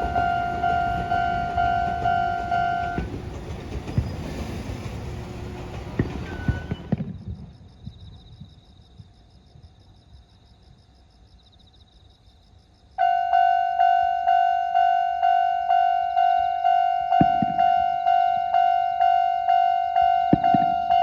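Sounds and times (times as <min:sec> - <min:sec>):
level crossing warning bell: 0:00.0 - 0:03.5, 0:06.0 - 0:06.9, 0:13.0 - 0:21.0
low knocks: 0:00.0 - 0:07.1, 0:17.1 - 0:17.9, 0:20.2 - 0:21.0.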